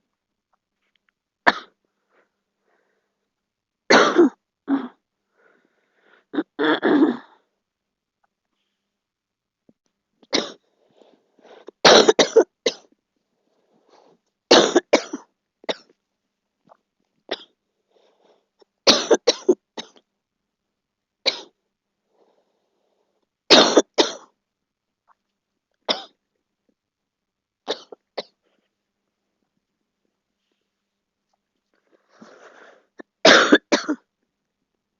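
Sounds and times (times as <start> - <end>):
girl coughing: 3.9 - 5.0, 6.4 - 7.3, 11.9 - 12.8, 14.5 - 15.9, 18.9 - 20.0, 23.5 - 24.2, 33.0 - 34.0.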